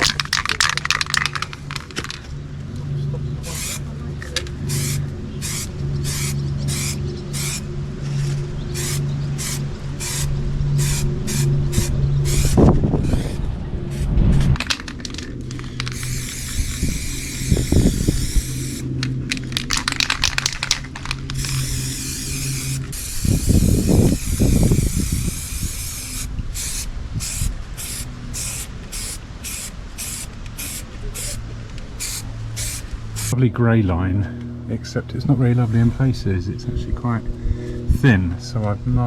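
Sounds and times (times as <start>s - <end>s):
steady low hum: 0.0s - 39.0s
spray hissing: 3.4s - 3.9s, 4.6s - 7.7s, 8.8s - 33.4s.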